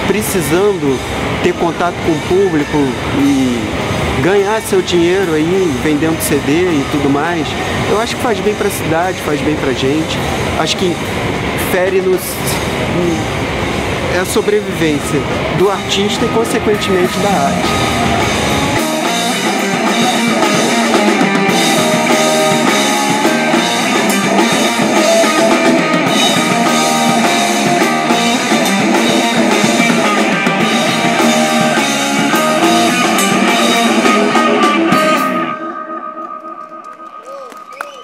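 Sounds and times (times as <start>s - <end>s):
rock music with drums and guitar: 15.2s - 36.4s.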